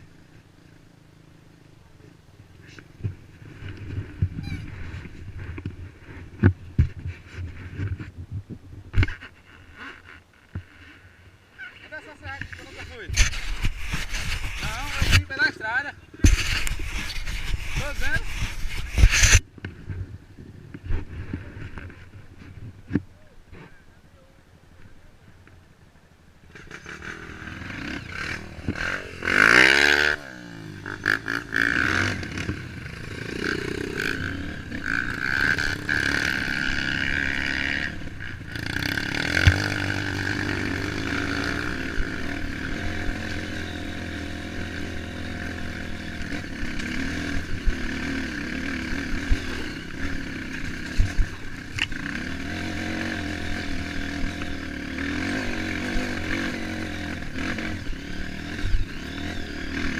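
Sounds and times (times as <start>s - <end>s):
motorcycle engine revving: 9.0s - 19.5s, 26.5s - 59.9s.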